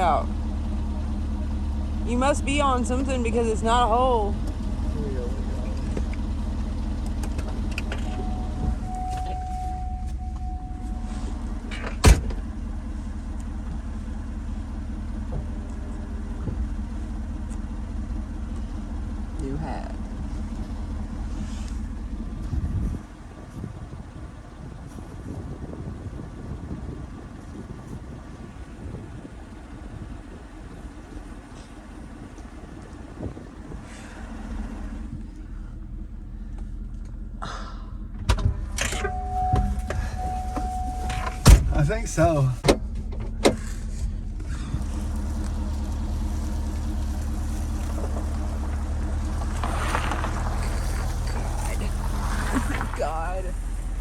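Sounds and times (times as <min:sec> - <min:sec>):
vehicle engine running at low speed: 0:00.0 - 0:54.0.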